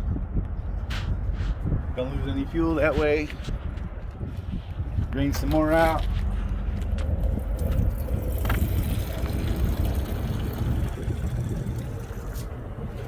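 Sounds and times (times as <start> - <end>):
steady low rumble: 0.0 - 13.0
fuel draining into container: 6.8 - 13.0.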